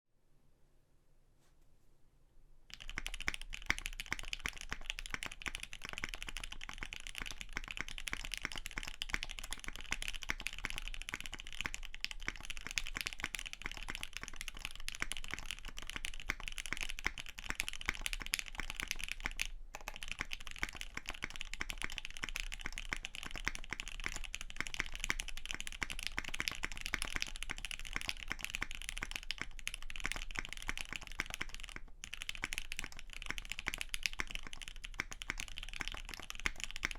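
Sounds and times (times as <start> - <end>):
mechanical keyboard typing: 2.7 - 36.9.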